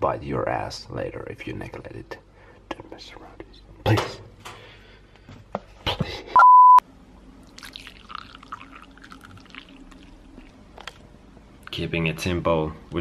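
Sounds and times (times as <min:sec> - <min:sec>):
high-pitched censor beep: 0:06.4 - 0:06.8.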